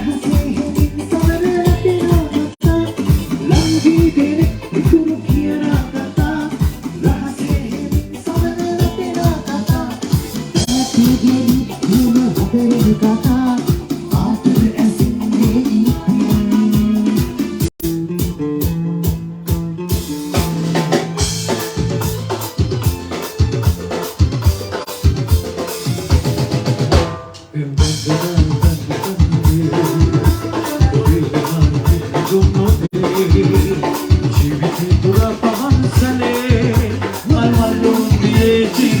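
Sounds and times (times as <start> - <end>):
drum kit beating fast: 0.0 - 39.0
live band through speakers: 0.0 - 39.0.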